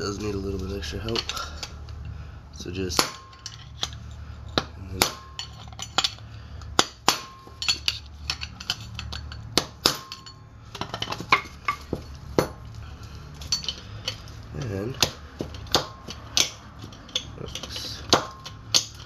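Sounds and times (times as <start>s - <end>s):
hammer striking steel: 2.9s - 3.9s, 4.6s - 10.4s, 15.0s - 19.0s.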